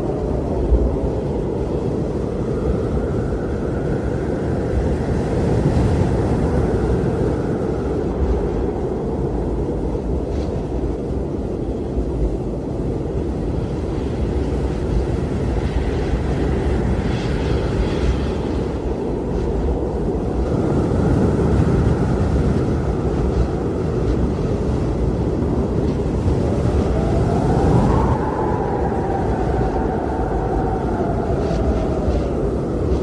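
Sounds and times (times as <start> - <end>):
blizzard wind rushing: 0.0 - 33.0
faint whistling howl: 26.5 - 33.0.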